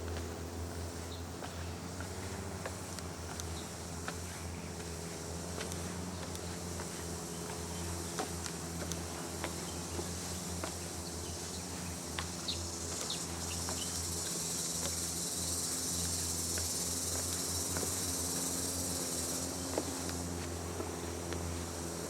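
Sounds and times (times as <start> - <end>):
shrill insect chorus: 9.1 - 22.0.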